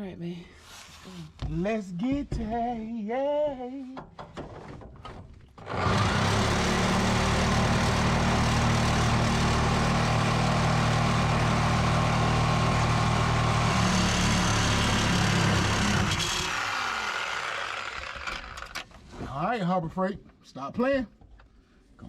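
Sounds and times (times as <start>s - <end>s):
power cutting tool grinding steel: 5.6s - 18.8s.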